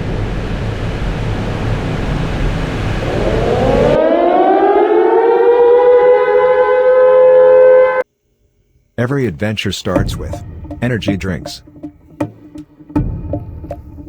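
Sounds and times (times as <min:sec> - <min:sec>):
rushing noise: 0:00.0 - 0:04.4
siren wail: 0:02.6 - 0:08.0.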